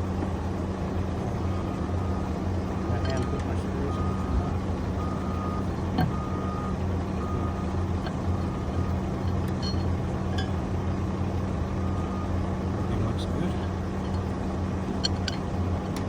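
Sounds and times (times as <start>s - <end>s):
diesel engine running: 0.0s - 16.0s
reversing alarm beeping: 1.4s - 10.6s, 11.8s - 12.4s.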